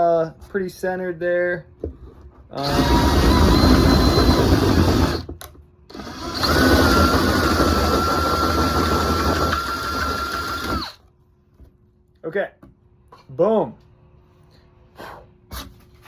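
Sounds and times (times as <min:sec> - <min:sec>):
power drill whining: 0:02.6 - 0:05.3, 0:05.9 - 0:11.0.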